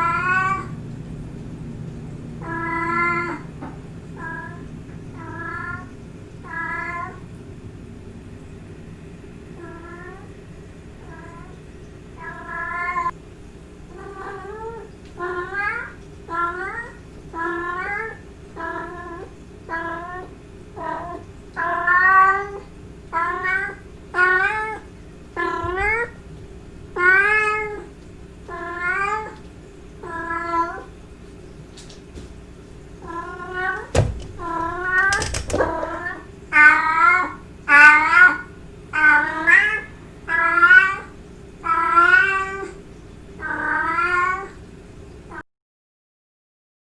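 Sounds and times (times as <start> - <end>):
cat meowing: 0.0 - 0.7, 2.4 - 3.5, 33.0 - 42.8.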